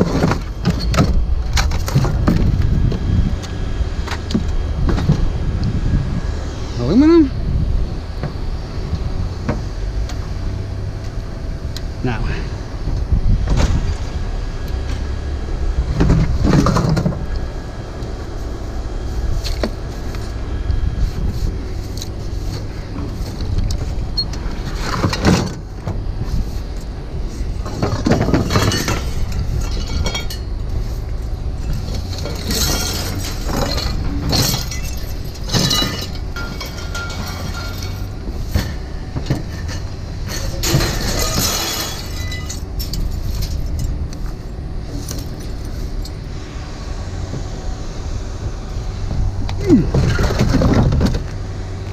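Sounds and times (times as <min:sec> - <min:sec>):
steady low rumble: 0:00.0 - 0:51.9
scrap metal clanking onto pile: 0:27.6 - 0:30.5, 0:31.7 - 0:43.9.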